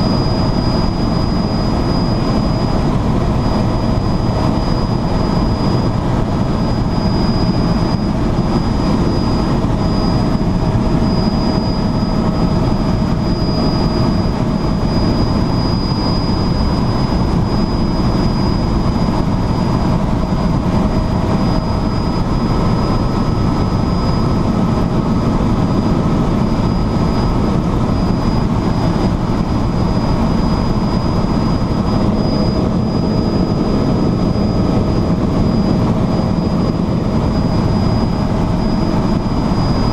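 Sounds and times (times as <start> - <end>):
faint whining tones: 0.0 - 39.9
helicopter engine and rotor drone: 0.0 - 39.9.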